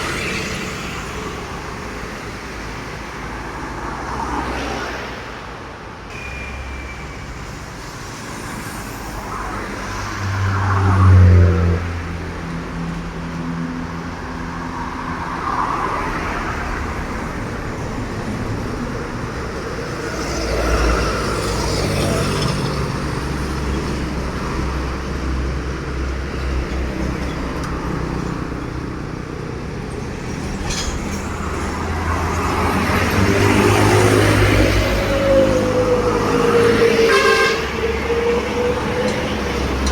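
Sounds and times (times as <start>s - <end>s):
trucks rumbling past: 0.0s - 5.4s, 6.1s - 39.9s
truck horn: 36.7s - 39.0s.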